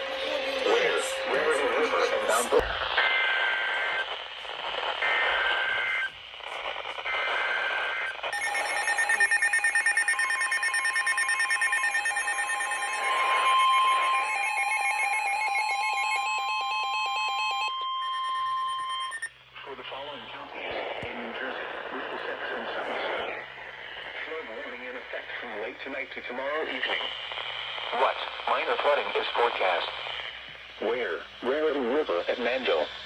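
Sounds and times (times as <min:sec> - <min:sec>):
warbling two-tone data bursts: 0:07.5 - 0:19.3
long steady alert tone: 0:08.3 - 0:19.3.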